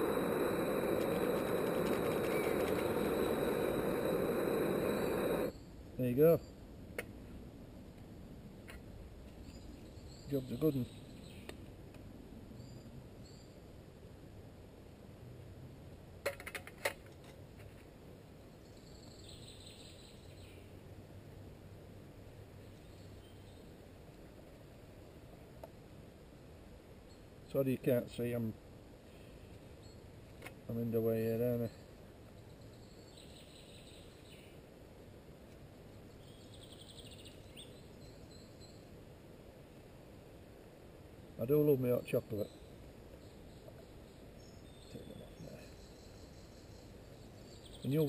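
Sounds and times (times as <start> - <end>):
bird trilling: 0.0 - 5.5
faint bird chirps: 0.0 - 6.6, 9.4 - 11.5, 12.5 - 13.7, 18.5 - 20.7, 22.6 - 23.8, 29.1 - 30.1, 31.1 - 34.6, 36.1 - 39.0, 41.7 - 48.0
low steady background hush: 0.0 - 48.0
low steady background noise: 0.0 - 48.0.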